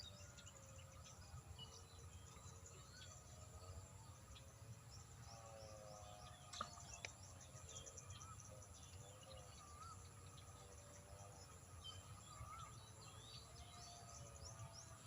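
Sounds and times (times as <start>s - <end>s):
insects: 0.0s - 15.0s.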